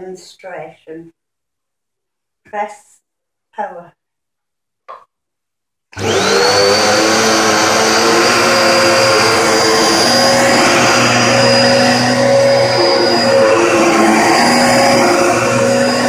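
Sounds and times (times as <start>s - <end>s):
vacuum cleaner motor whine: 6.0s - 16.0s.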